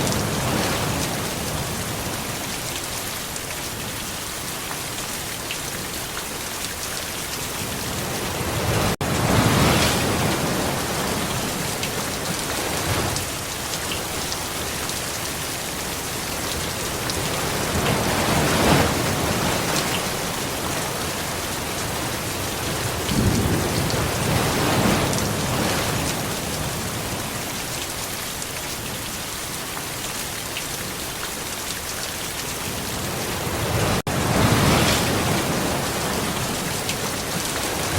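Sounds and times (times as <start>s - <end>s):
heavy rain falling: 0.0s - 37.9s
rolling thunder rumbles: 22.8s - 27.1s.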